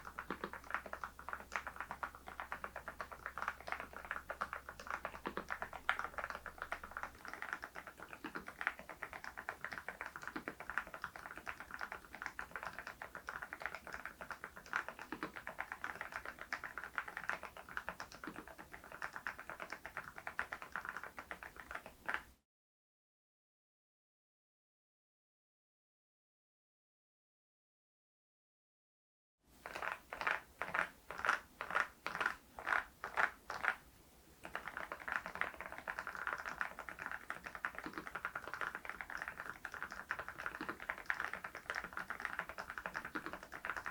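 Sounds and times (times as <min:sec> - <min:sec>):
mechanical keyboard typing: 0:34.4 - 0:43.9.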